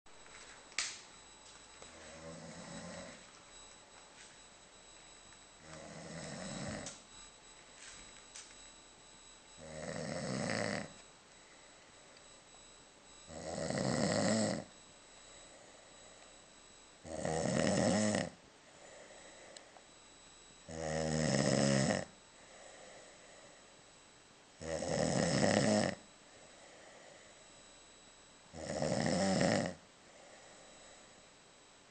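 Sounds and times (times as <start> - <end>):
person snoring: 2.0 - 3.2, 5.6 - 7.0, 9.6 - 10.9, 13.3 - 14.7, 17.1 - 19.6, 20.7 - 23.6, 24.6 - 27.4, 28.6 - 31.1
quiet breathing: 9.5 - 12.5, 13.7 - 16.5, 18.6 - 20.0, 22.0 - 24.0, 26.1 - 27.7, 29.7 - 31.5.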